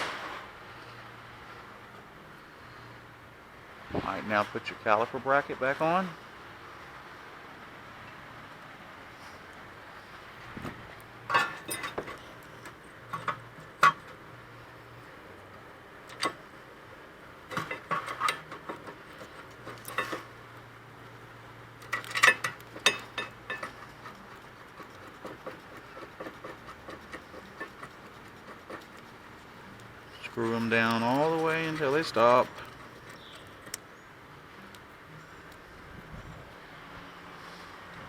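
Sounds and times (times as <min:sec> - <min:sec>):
metal clinks and scraping: 0:11.2 - 0:14.2, 0:17.5 - 0:20.4, 0:21.8 - 0:29.2, 0:30.1 - 0:33.8.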